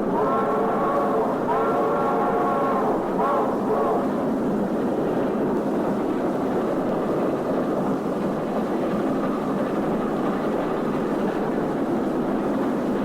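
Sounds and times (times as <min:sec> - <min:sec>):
steam locomotive whistle: 0:00.0 - 0:04.2
train coach rumbling on rails: 0:00.0 - 0:13.0.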